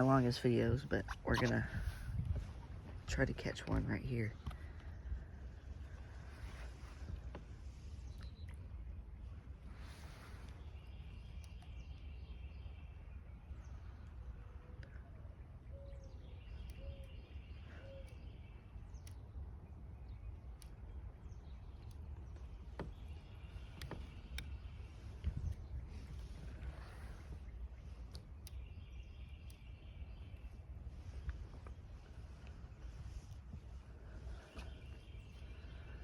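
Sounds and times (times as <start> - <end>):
bird singing: 0.0 - 1.8, 7.8 - 36.0
steady low rumble: 0.0 - 15.2.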